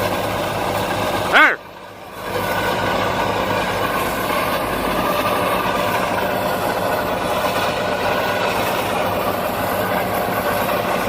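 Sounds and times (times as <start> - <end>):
diesel engine idling: 0.0 - 11.0.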